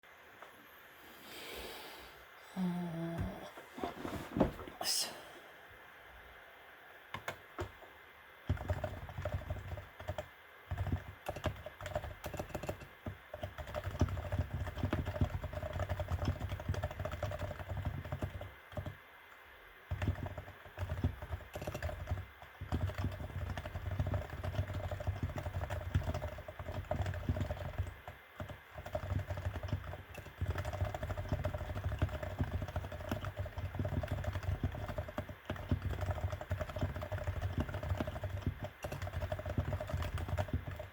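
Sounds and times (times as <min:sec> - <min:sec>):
typing on keyboard: 0:07.1 - 0:07.8, 0:08.4 - 0:19.0, 0:19.9 - 0:40.9.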